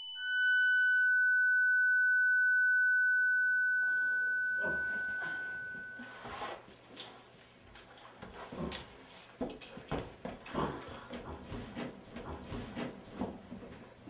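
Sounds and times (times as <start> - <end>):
high-pitched ringing tone: 0.0 - 6.4.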